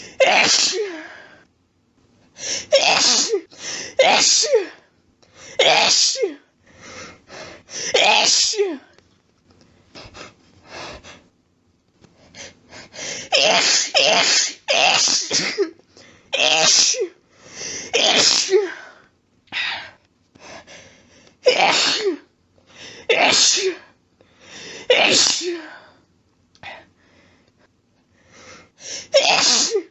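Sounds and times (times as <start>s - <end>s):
person sneezing: 0.0s - 1.2s, 2.4s - 4.8s, 5.5s - 6.4s, 7.8s - 8.9s, 13.1s - 15.8s, 16.4s - 17.2s, 17.8s - 18.9s, 21.4s - 22.3s, 23.1s - 23.9s, 24.8s - 25.8s, 28.8s - 29.9s.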